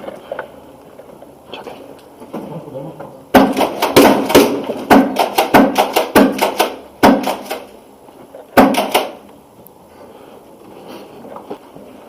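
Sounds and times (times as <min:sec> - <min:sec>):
airsoft gun rapid shots: 0:03.3 - 0:07.8, 0:08.6 - 0:09.2.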